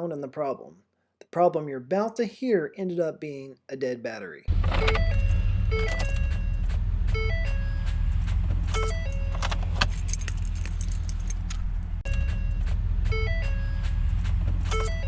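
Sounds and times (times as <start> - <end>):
stepped electronic chime: 4.6 - 9.5, 12.0 - 15.0.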